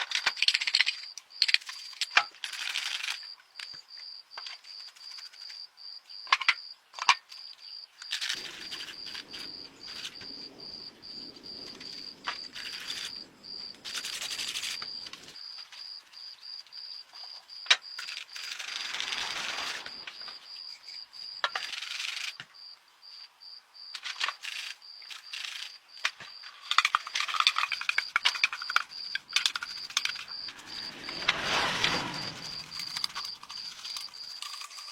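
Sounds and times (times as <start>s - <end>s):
high-pitched whine: 28.9s - 34.0s.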